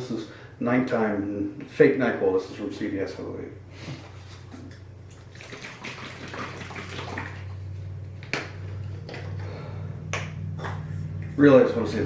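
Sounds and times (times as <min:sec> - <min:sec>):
steady low hum: 0:00.0 - 0:12.0
liquid pouring with splashy trickle: 0:05.1 - 0:07.6.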